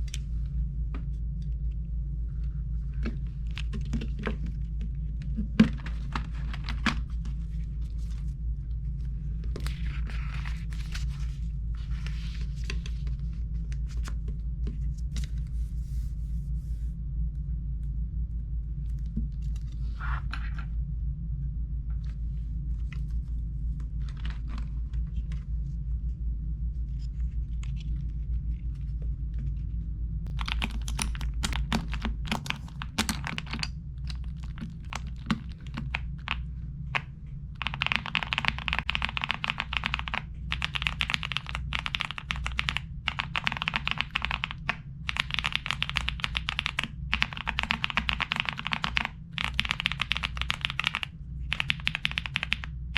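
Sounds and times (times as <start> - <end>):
low hum: 0.0 - 52.9
typing on mechanical keyboard: 30.3 - 36.4, 37.0 - 52.8.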